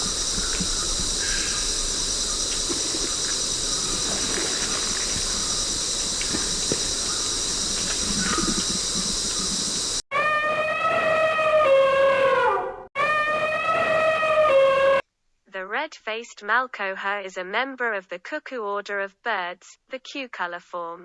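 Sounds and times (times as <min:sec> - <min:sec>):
insects droning: 0:00.0 - 0:10.0.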